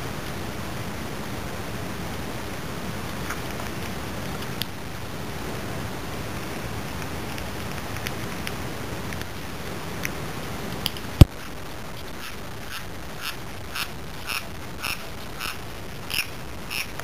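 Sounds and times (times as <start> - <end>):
kitten crunching kibble: 6.4 - 17.0.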